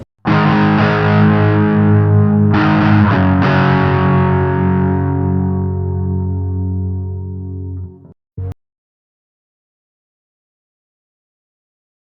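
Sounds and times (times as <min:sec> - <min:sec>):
guitar chords ringing: 0:00.2 - 0:08.6.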